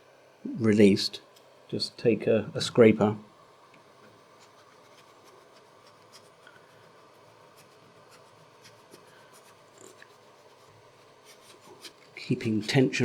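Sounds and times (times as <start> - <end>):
scraper scratching and ticking: 4.4 - 13.0.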